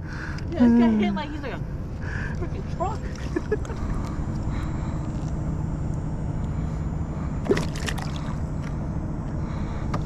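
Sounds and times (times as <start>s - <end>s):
steady low rumble: 0.0s - 10.0s
water sloshing against canoe: 7.4s - 8.2s.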